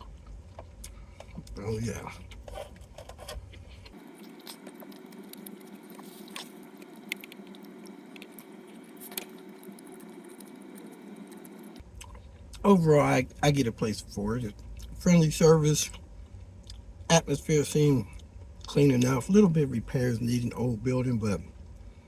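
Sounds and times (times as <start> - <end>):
person chewing food: 0.0 - 12.6, 15.9 - 16.9.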